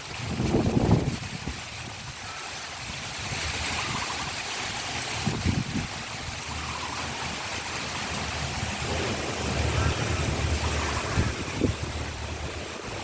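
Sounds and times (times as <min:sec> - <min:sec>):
heavy rain falling: 0:00.0 - 0:13.0
wind buffeting microphone: 0:00.0 - 0:13.0.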